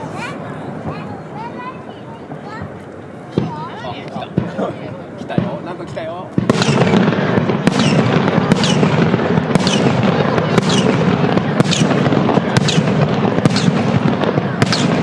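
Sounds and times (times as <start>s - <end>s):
fireworks bursts rumbling: 0.0s - 15.0s
fireworks crackling: 0.0s - 15.0s
sharp bang: 5.3s - 15.0s.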